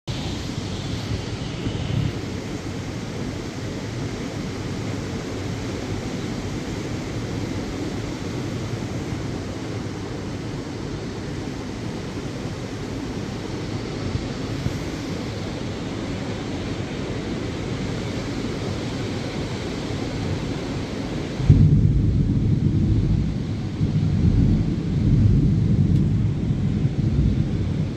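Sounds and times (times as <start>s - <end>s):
ocean surf: 0.1s - 21.8s
wind: 0.1s - 27.9s.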